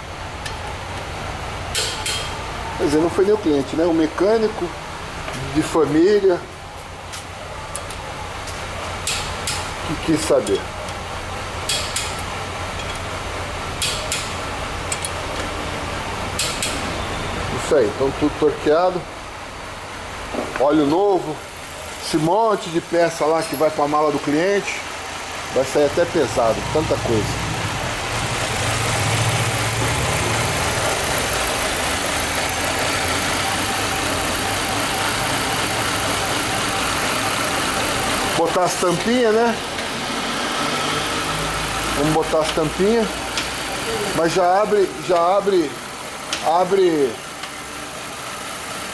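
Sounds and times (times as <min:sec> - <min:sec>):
car engine idling: 0:00.0 - 0:48.9
torque wrench clicking: 0:09.0 - 0:09.7, 0:11.7 - 0:13.1, 0:13.8 - 0:15.5, 0:16.3 - 0:16.9, 0:41.1 - 0:43.8
steady low hum: 0:21.2 - 0:38.8.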